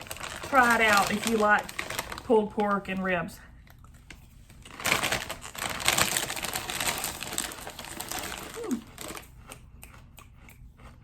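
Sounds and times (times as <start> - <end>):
foil chip bag crinkling: 0.0 - 9.6.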